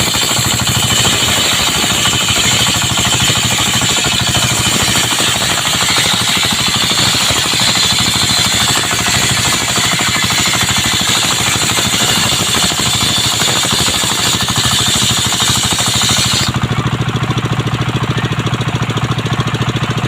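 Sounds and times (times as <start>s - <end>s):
high saw whine: 0.0s - 20.0s
sawmill engine pulsing: 0.0s - 20.0s.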